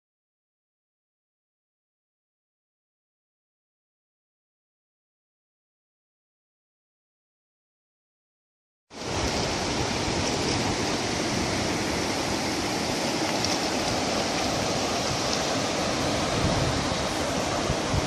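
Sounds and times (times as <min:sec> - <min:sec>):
river water rushing over stones: 0:08.9 - 0:18.0.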